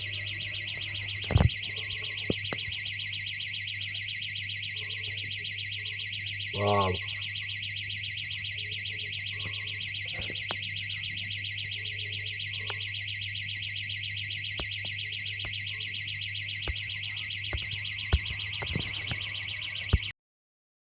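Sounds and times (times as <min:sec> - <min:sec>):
high pulsing electronic alarm: 0:00.0 - 0:20.1.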